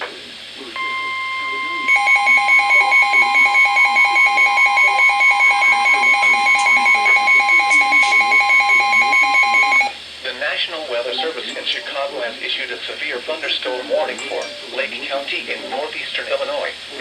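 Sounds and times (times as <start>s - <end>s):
rapid alarm beeps: 0.8s - 10.0s
steady high alarm tone: 0.8s - 10.0s.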